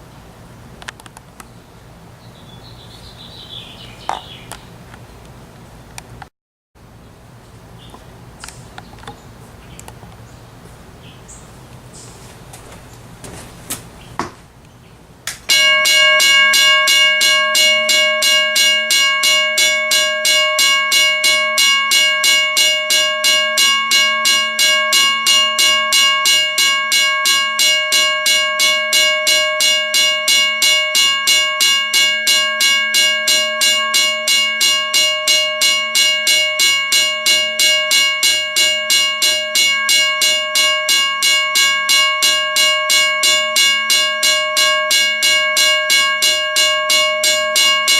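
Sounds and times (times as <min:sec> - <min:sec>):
railroad crossing bell ringing: 0:15.5 - 0:47.9.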